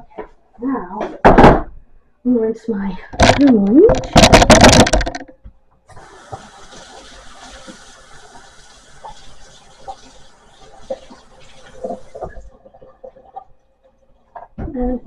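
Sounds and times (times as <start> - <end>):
kitchen tap running: 5.9 - 14.6
sponge rinsed with splashes: 5.9 - 14.6.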